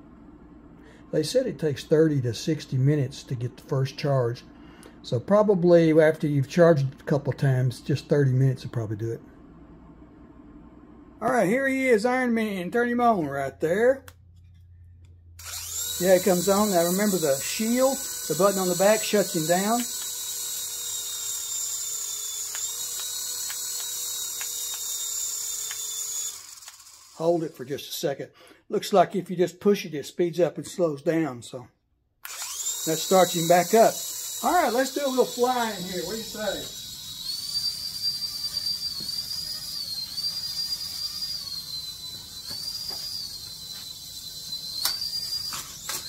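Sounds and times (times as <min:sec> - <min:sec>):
toy helicopter motors whirring: 0:15.4 - 0:27.7, 0:32.2 - 0:46.0.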